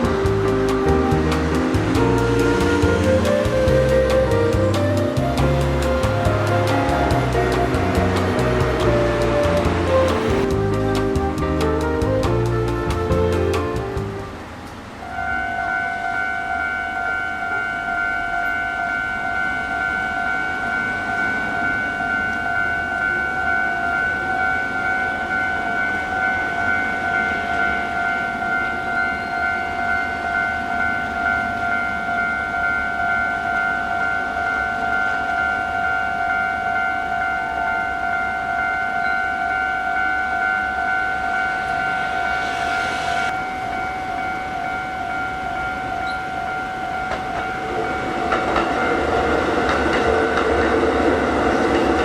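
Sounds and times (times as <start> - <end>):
level crossing warning bell: 0.0 - 10.5, 14.3 - 52.0.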